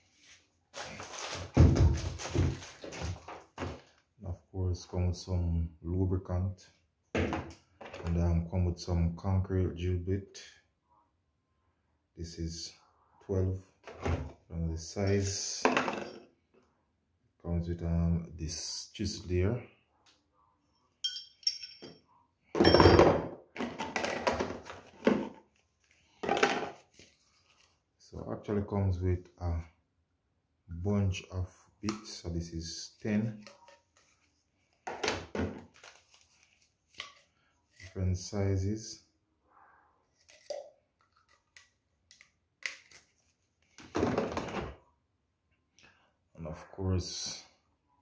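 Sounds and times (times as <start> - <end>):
packaging rustling: 0.7 - 4.0.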